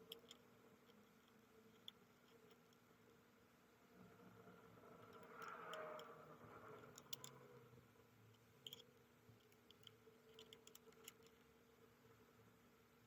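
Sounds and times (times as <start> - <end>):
faint room hum: 0.0 - 13.0
small clicks: 8.3 - 11.5.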